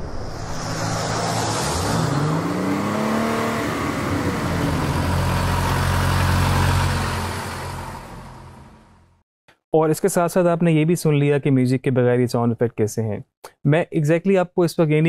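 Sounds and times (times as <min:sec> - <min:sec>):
car engine revving: 0:00.0 - 0:09.2
road noise: 0:00.0 - 0:09.2.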